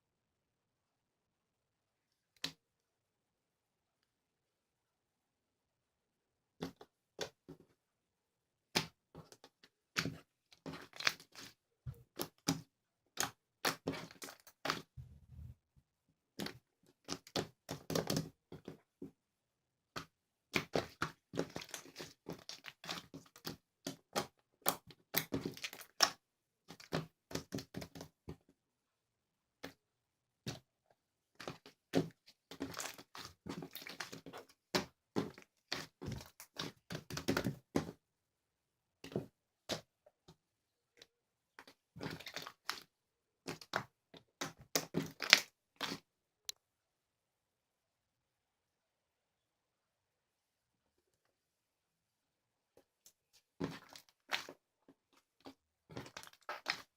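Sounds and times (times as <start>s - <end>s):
slime crackling and popping: 44.4s - 46.0s, 55.9s - 56.9s.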